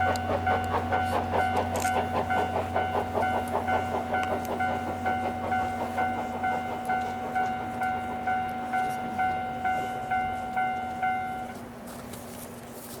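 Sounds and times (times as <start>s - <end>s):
level crossing warning bell ringing: 0.0s - 11.7s.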